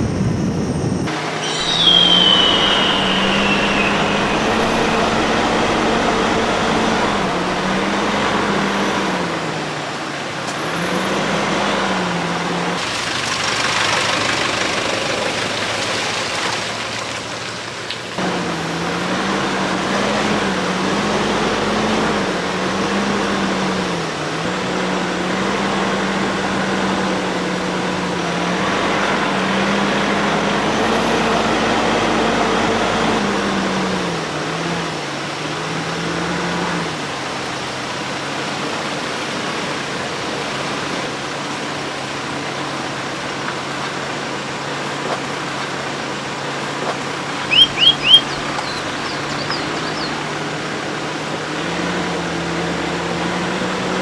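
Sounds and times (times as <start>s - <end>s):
road and tyre noise: 0.0s - 54.0s
car engine revving off-road: 1.9s - 16.0s, 18.0s - 54.0s.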